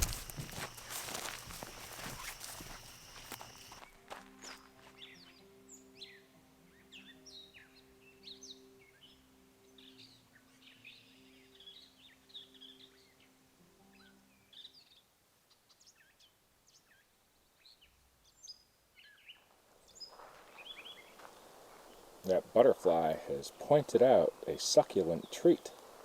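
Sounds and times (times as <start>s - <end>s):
songbirds chirping and trilling: 0.0s - 26.0s
soft background music: 3.8s - 15.7s.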